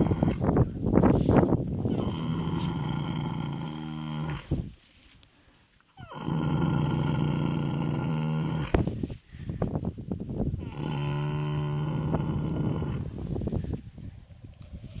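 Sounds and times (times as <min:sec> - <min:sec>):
horse snoring: 0:00.0 - 0:00.5, 0:01.8 - 0:04.7, 0:06.0 - 0:09.0, 0:10.6 - 0:13.4.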